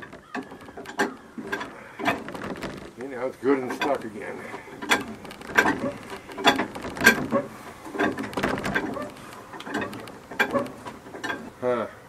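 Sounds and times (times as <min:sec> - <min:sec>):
metal clanks: 0:00.0 - 0:11.6
tool ratcheting: 0:04.7 - 0:11.5.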